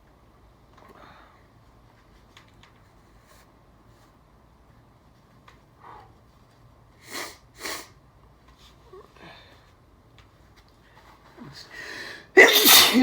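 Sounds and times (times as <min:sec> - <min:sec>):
faint breaths: 0:10.8 - 0:12.3
in-breath before a sneeze: 0:11.9 - 0:13.0
sharp nose sniffs: 0:12.4 - 0:13.0.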